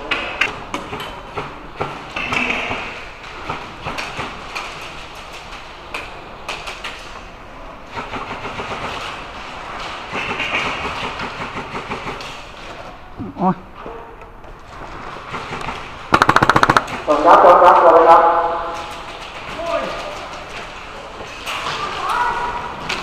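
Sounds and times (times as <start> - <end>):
bb gun shots with echo: 16.1 - 17.1.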